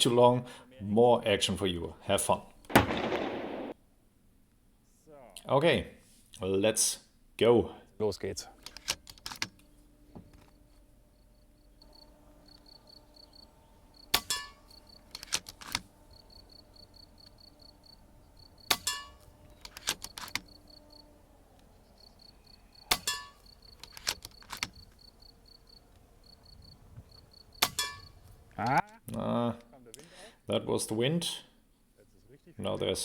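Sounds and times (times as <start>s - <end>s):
air rifle shot crack: 2.7s - 3.8s
rifle action metallic clicks: 8.6s - 9.6s, 15.1s - 15.9s, 18.7s - 20.5s, 22.9s - 24.8s.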